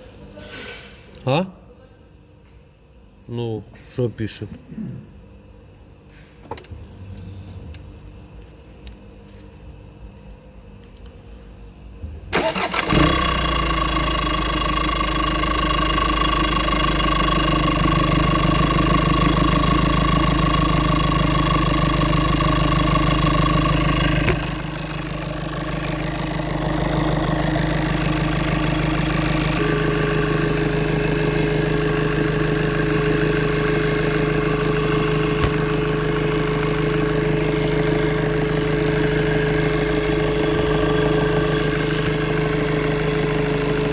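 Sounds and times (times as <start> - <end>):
engine cranking and starting: 12.3 - 43.9
engine idling: 12.3 - 43.9.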